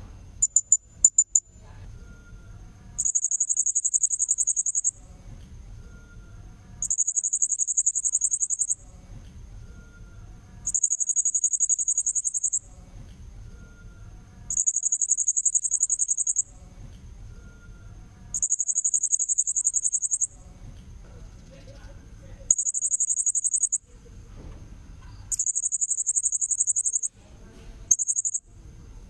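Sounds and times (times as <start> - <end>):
parrot high pulsed trill: 0.4 - 1.5, 3.0 - 5.0, 6.8 - 8.8, 10.6 - 12.7, 14.5 - 16.6, 18.3 - 20.4, 22.5 - 23.8, 25.3 - 27.1, 27.9 - 28.4.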